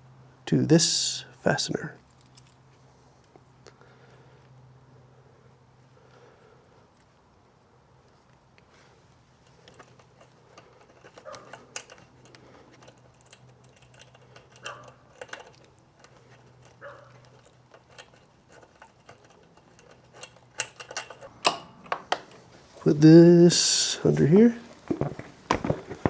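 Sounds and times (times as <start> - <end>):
small metal parts clicking: 9.4 - 22.5.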